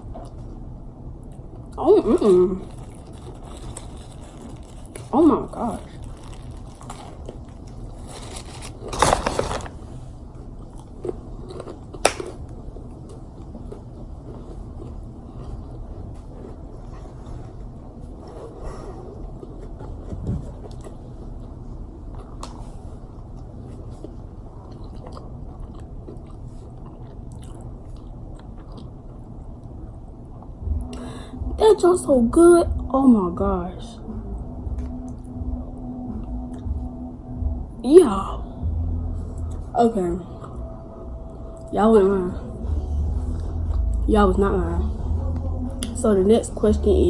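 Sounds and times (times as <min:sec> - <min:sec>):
low background hum: 0:00.0 - 0:47.0
chewing crunchy sandwich: 0:02.6 - 0:30.8.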